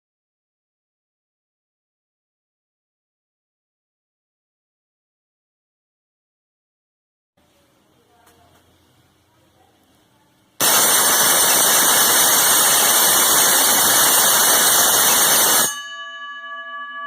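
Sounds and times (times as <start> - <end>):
loud harsh alarm: 10.6 - 16.0
faint steady ringing tone: 10.6 - 17.0.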